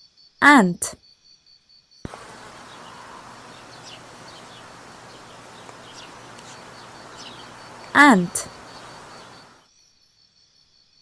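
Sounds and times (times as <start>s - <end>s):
steady background hiss: 2.1s - 9.6s.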